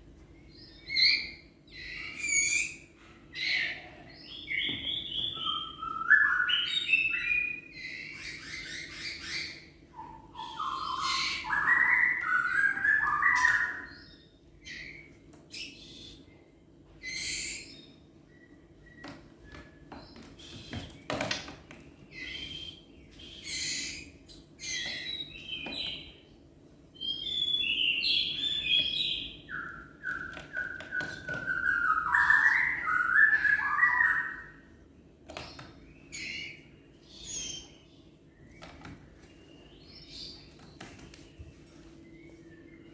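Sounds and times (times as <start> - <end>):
bird chirps and calls: 0.4 - 26.3, 26.9 - 42.9
songbird warbling: 5.1 - 13.9.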